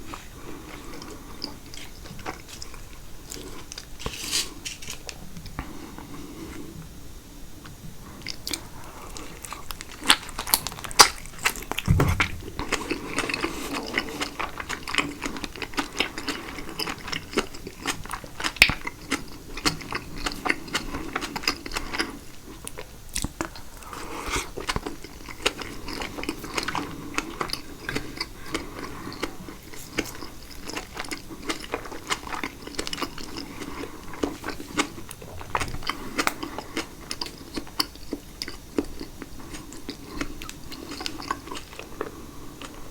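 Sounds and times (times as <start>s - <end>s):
person chewing food: 0.1s - 4.1s, 8.0s - 42.9s
low thump: 11.9s - 13.0s.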